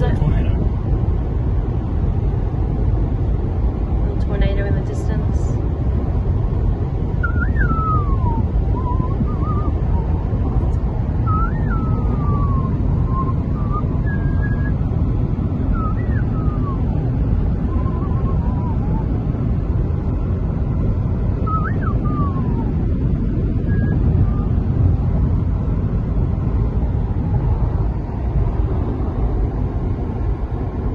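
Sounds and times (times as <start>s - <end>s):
car road and engine rumble: 0.0s - 30.9s
wavering whistle-like tone: 7.2s - 14.8s, 15.7s - 17.0s, 17.6s - 19.1s, 21.4s - 24.7s.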